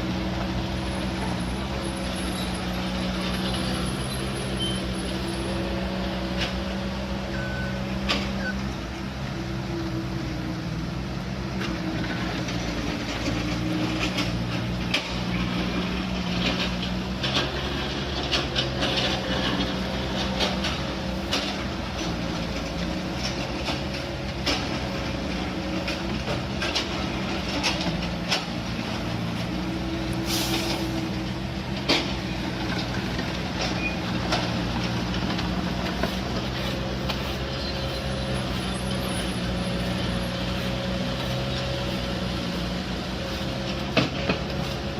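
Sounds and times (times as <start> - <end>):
diesel machinery running: 0.0 - 44.9
hiss of released air: 30.2 - 31.0.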